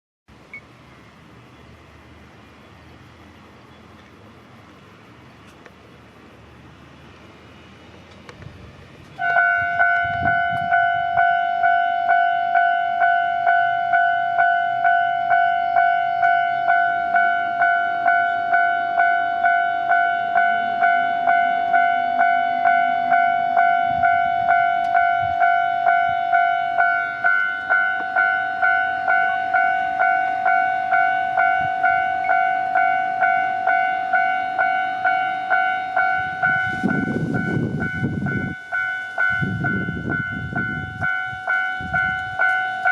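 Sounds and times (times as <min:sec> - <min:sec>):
low rumble of approaching train: 0:00.3 - 0:42.9
level crossing bell ringing: 0:09.3 - 0:42.9.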